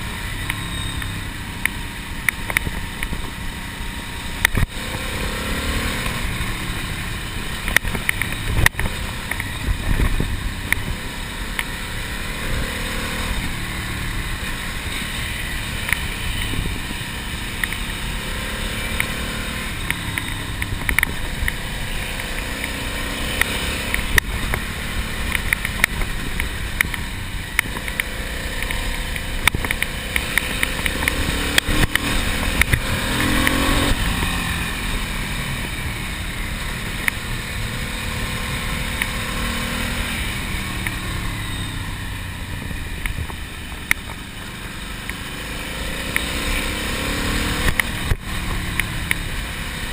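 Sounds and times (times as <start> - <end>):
motorcycle engine running: 0.0 - 49.9
sharp clicks and knocks: 0.4 - 3.2, 7.6 - 10.9, 19.8 - 21.6, 23.4 - 33.6, 47.6 - 49.2
wind rushing over microphone: 7.6 - 11.3, 15.3 - 17.3.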